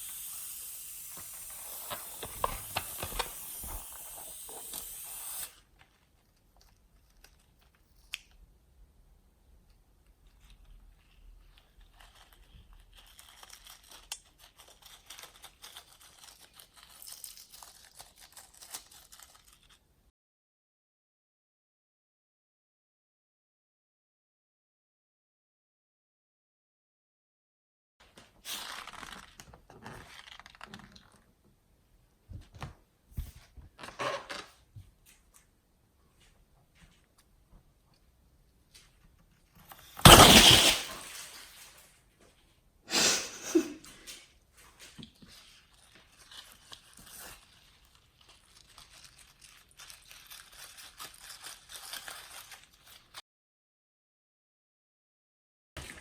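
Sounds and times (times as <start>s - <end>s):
rustling and crinkling: 1.2s - 4.7s, 10.1s - 19.9s, 28.0s - 31.6s, 43.8s - 53.2s.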